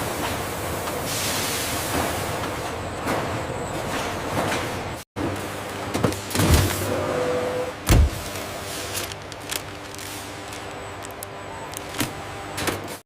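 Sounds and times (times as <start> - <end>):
machinery humming: 5.2 - 13.0.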